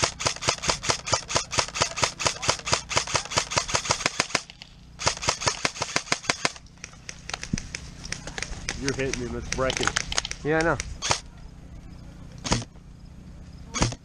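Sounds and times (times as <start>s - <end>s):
airsoft guns rapid firing: 0.0s - 11.2s, 12.4s - 12.7s, 13.8s - 14.0s.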